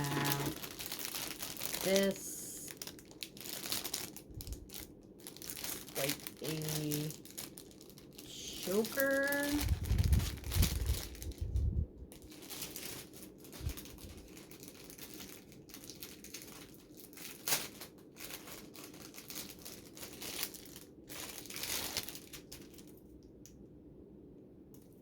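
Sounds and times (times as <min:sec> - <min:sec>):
packaging crinkling and tearing: 0:00.0 - 0:23.1.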